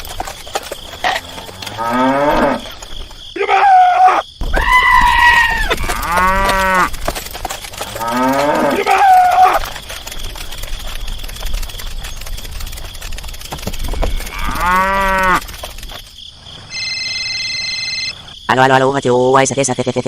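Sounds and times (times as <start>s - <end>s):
cattle mooing: 0.8s - 2.7s, 5.0s - 7.0s, 7.7s - 9.7s, 14.2s - 15.4s.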